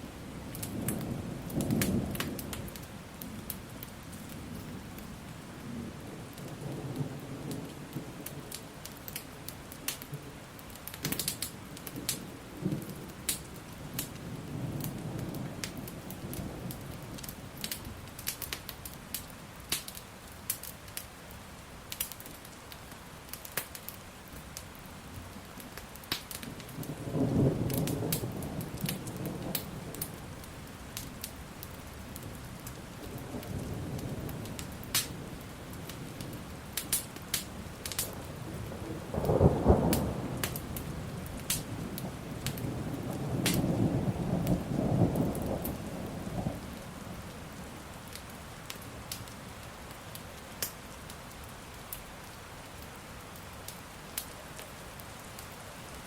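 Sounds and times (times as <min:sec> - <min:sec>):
wood fire crackling and popping: 0:00.0 - 0:05.2, 0:06.3 - 0:21.2, 0:21.9 - 0:56.0
steady rain: 0:00.0 - 0:56.0
rolling thunder: 0:37.6 - 0:47.6.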